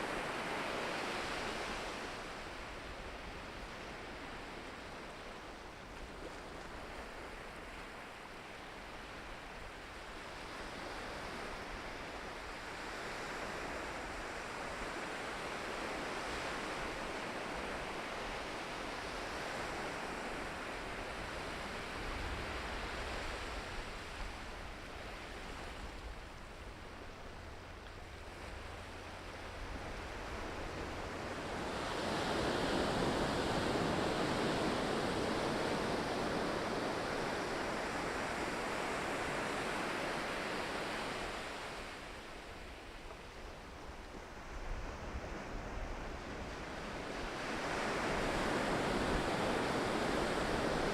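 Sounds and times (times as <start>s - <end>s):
ocean surf washing on shore: 0.0s - 50.9s.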